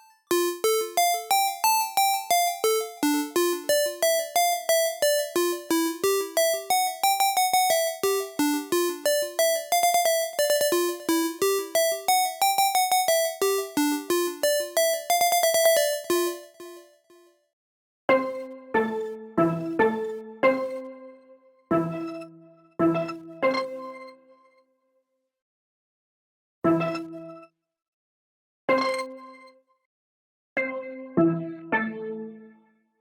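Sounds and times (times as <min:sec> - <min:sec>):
chiptune synth melody: 0:00.3 - 0:16.8.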